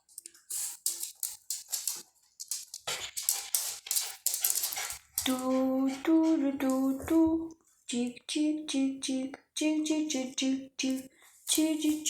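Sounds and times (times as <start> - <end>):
small dog breathing noisily: 2.8 - 7.2
girl humming a tune: 5.3 - 12.0.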